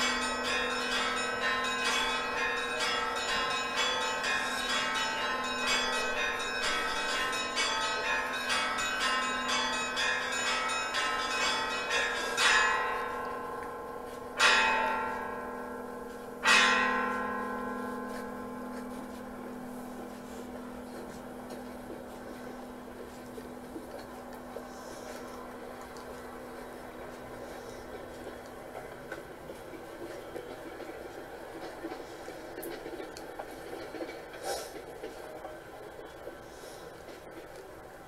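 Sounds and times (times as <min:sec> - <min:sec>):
heavy bell strikes: 0:00.0 - 0:25.1
small church bells ringing: 0:00.0 - 0:28.8.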